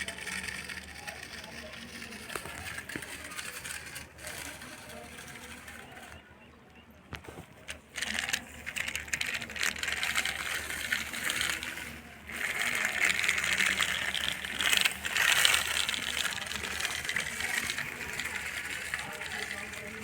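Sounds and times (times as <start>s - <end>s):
gravel and soil clattering: 0.0s - 6.2s, 7.1s - 20.0s.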